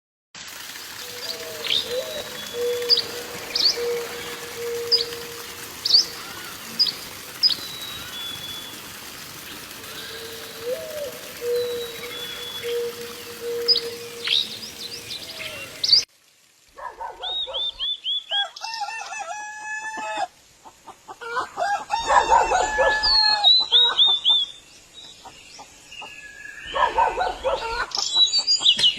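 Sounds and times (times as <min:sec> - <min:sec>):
birds calling: 0:00.7 - 0:16.1.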